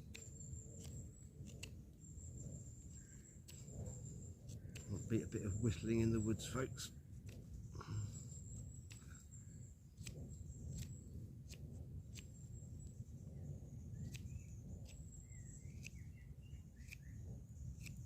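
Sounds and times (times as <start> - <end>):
birds chirping and whistling: 12.6 - 17.6.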